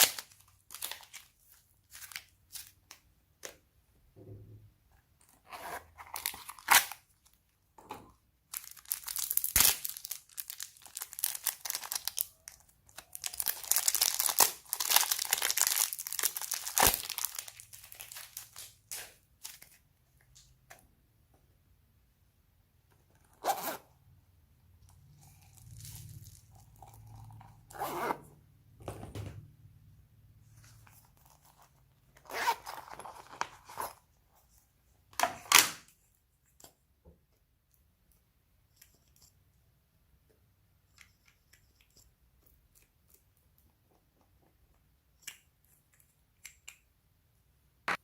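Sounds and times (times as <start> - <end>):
slime stretching and tearing: 8.6 - 12.5.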